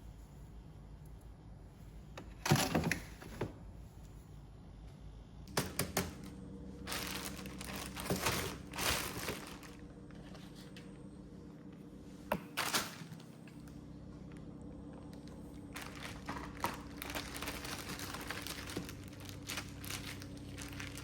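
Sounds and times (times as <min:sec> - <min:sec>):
steady low hum: 0:00.0 - 0:21.0
rustling and crinkling: 0:06.2 - 0:11.0, 0:12.5 - 0:21.0.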